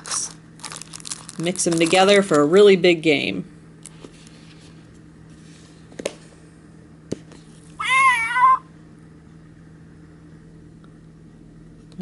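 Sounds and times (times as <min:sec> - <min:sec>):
cat meowing: 0:07.8 - 0:08.7.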